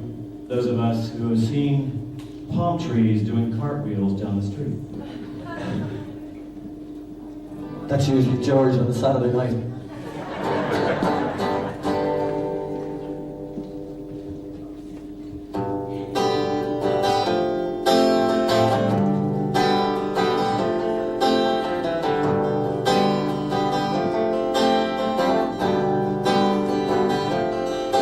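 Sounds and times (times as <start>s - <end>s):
acoustic guitar strumming chords: 10.4s - 28.0s.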